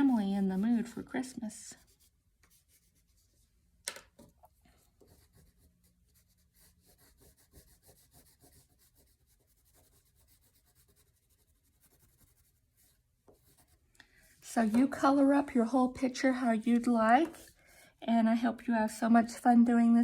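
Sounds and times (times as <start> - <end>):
coloring strokes on paper: 0.0 - 3.5, 4.7 - 15.3.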